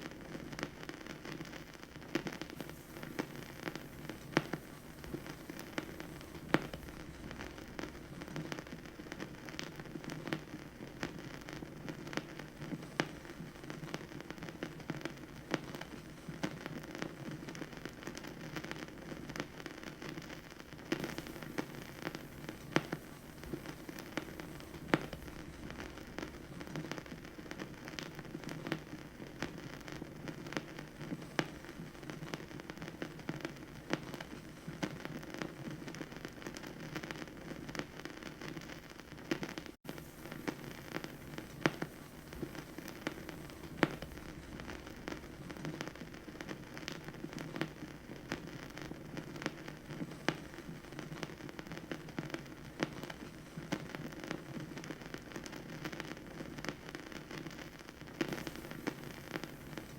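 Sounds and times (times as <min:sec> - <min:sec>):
vinyl crackle and hiss: 0:00.0 - 0:59.9
vinyl pops: 0:00.0 - 0:59.9.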